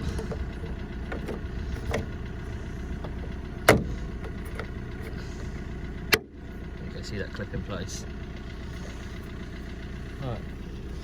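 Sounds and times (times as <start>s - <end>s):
low mechanical rumble: 0.0s - 11.0s.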